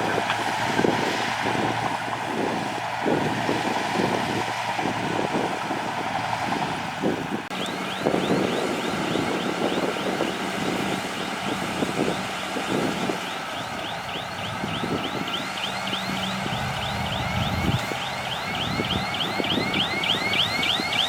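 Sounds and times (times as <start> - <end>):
bulldozer engine hum: 0.0 - 21.0.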